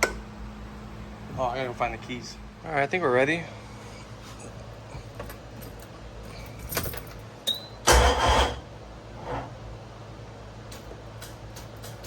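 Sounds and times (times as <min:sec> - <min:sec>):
keys jangling: 0:05.3 - 0:07.2.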